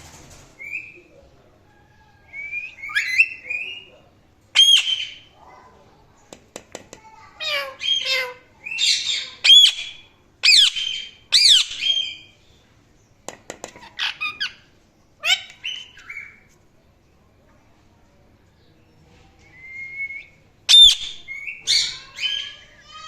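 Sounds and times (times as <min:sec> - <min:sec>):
parrot squawking and whistling: 0:04.6 - 0:05.2, 0:07.4 - 0:12.3, 0:20.2 - 0:22.6.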